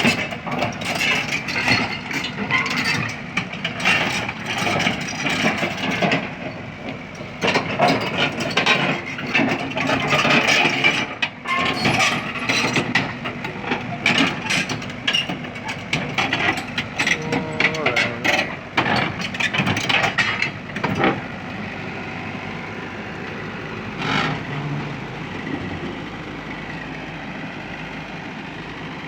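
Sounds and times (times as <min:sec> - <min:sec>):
metal clanking and rattling: 0:00.0 - 0:06.6, 0:07.4 - 0:21.2
excavator running: 0:00.0 - 0:29.0.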